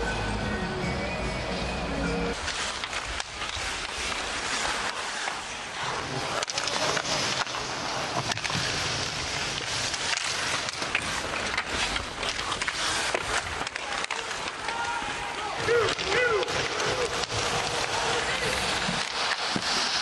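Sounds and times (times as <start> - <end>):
skates scraping ice: 1.5 - 20.0
hockey sticks and puck clicking: 2.4 - 20.0
crowd noise: 12.8 - 20.0.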